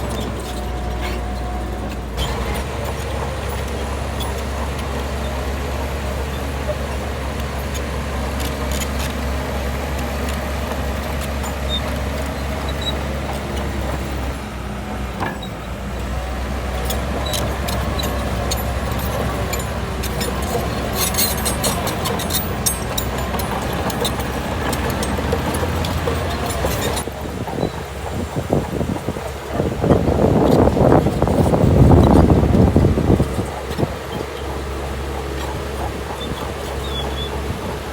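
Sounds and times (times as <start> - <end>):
diesel engine droning: 0.0 - 37.9
metallic clicks and rattles: 16.9 - 27.1.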